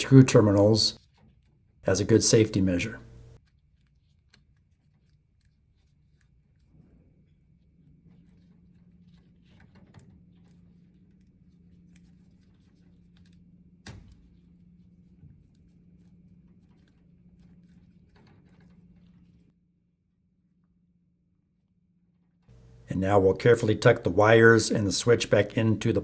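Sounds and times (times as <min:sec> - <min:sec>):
tape rustling and crinkling: 0:03.4 - 0:19.5.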